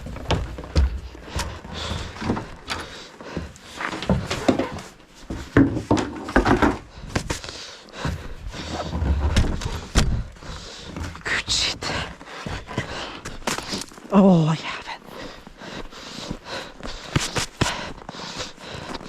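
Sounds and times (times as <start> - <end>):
parts knocking and rustling: 0.0 - 11.2.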